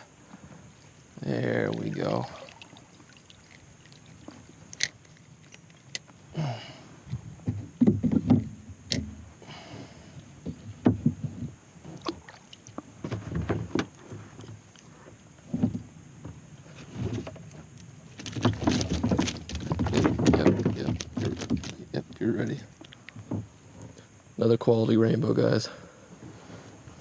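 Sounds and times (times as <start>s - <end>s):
rustling splashes: 0.3s - 6.0s, 11.8s - 15.2s, 16.6s - 23.1s
knocks against boat hull: 7.4s - 9.2s, 10.4s - 11.5s, 18.4s - 21.7s.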